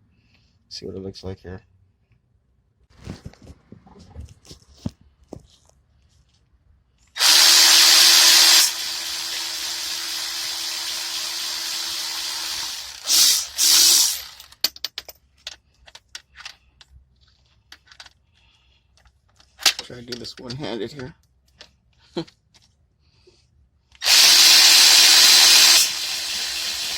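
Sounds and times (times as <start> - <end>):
cordless power tool loosening bolt: 7.2 - 14.6, 24.0 - 26.9
clicks of parts being handled: 14.4 - 22.8.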